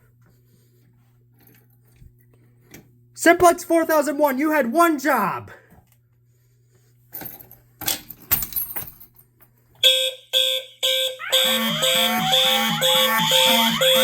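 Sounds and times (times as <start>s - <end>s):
pulsing fire alarm horns: 9.8s - 14.0s
warbling and sweeping alarm tones: 10.8s - 14.0s
rising whoop alarm: 11.1s - 14.0s.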